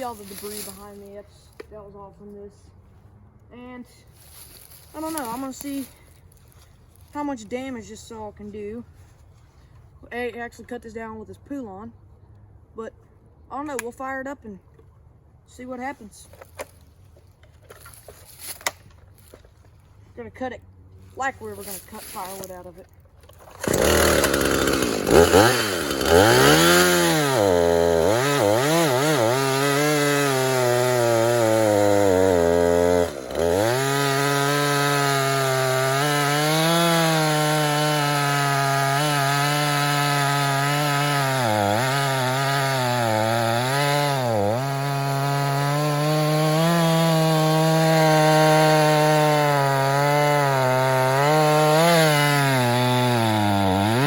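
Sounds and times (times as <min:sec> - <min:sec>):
chainsaw revving and cutting log: 0:00.0 - 0:01.2, 0:04.2 - 0:06.2, 0:21.4 - 0:54.0.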